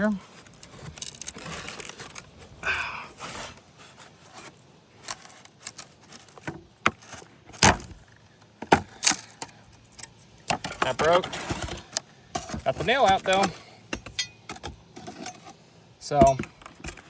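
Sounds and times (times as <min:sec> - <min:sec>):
wood scraping: 0:00.0 - 0:02.6, 0:03.2 - 0:17.0
wood cracking and knocking: 0:05.1 - 0:09.5.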